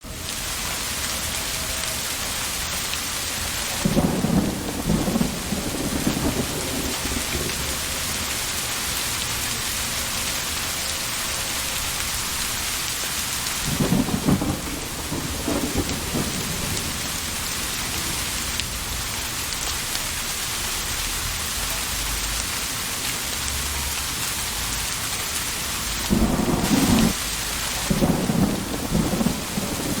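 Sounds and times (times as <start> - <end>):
heavy rain hissing: 0.0 - 30.0
thunder rumbling: 3.7 - 9.9, 13.5 - 19.3, 26.1 - 30.0.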